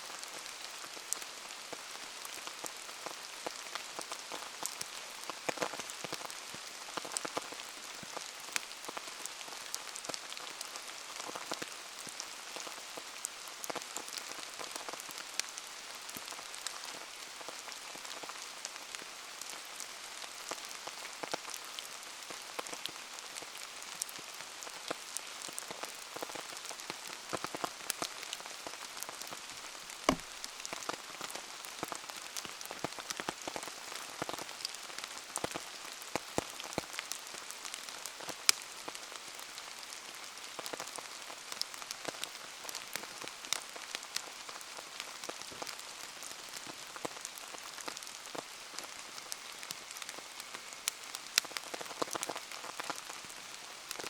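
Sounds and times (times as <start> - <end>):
steady rain hiss: 0.0 - 54.0
raindrops ticking: 29.8 - 30.8.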